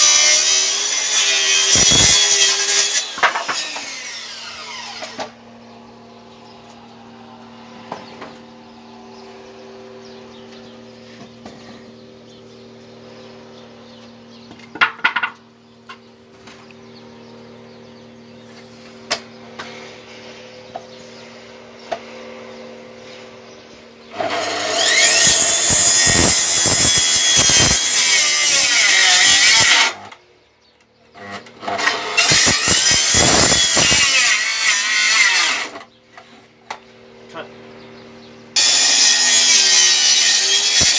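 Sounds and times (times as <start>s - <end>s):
power saw cutting timber: 0.0s - 5.4s, 24.1s - 30.2s, 31.1s - 35.9s, 38.6s - 40.9s.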